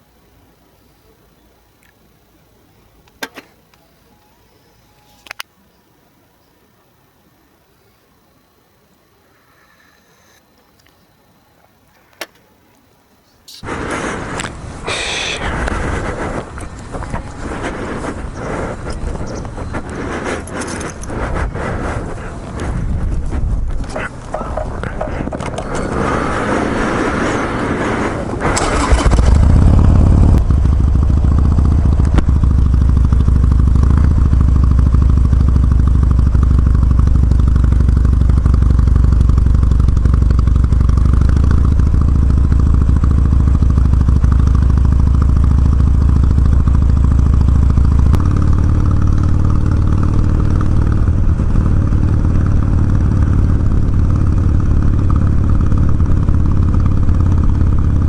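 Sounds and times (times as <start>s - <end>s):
motorcycle engine starting and idling: 13.6s - 58.0s.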